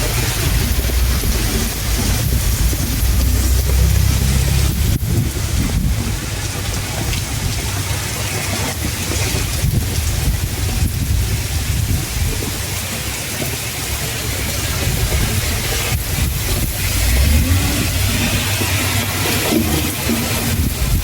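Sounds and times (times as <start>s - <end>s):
low rumble: 0.0s - 12.5s, 14.7s - 21.0s
heavy rain pouring: 0.0s - 21.0s.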